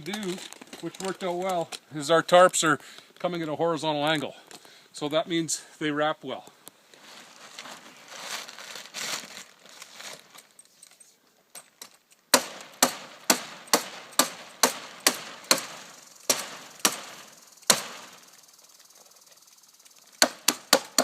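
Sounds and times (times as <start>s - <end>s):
plastic tarp rustling: 0.0s - 1.7s, 7.0s - 10.6s.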